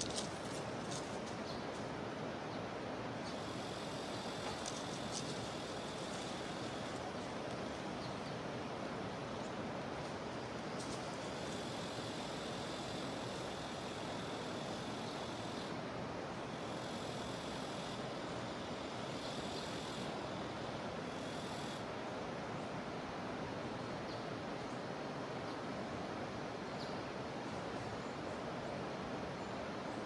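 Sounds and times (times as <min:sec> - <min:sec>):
cicadas buzzing: 0:00.0 - 0:01.9, 0:03.1 - 0:22.0.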